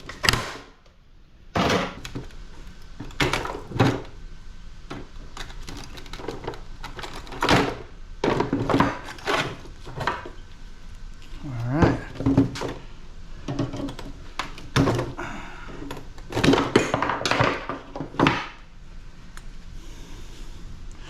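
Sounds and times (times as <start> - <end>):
scrap parts knocking and clattering: 1.5 - 4.2, 4.9 - 10.4, 11.8 - 18.6.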